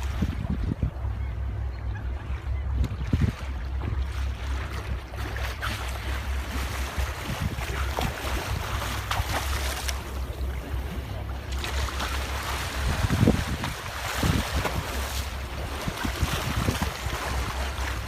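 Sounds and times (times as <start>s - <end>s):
wind buffeting microphone: 0.0s - 18.0s
brief splashes: 2.8s - 10.2s.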